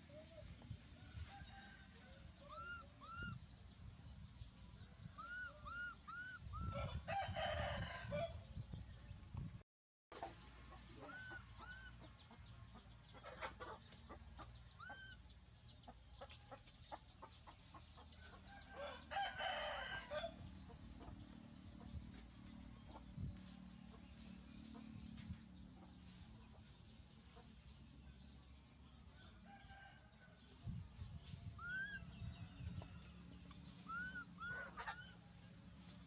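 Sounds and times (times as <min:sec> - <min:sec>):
animal chirping calls: 0:02.4 - 0:03.4, 0:05.2 - 0:06.8, 0:11.0 - 0:12.0, 0:31.6 - 0:32.1, 0:33.8 - 0:35.2.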